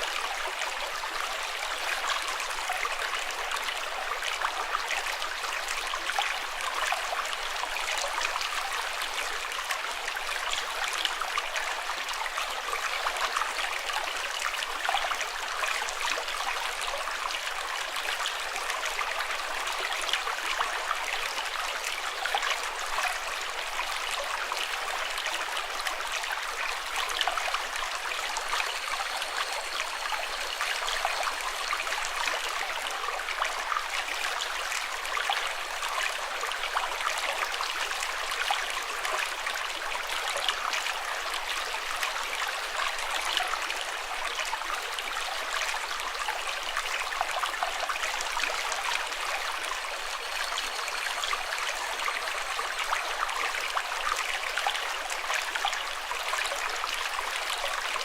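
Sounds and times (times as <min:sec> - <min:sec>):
running water trickling: 0:24.9 - 0:34.7.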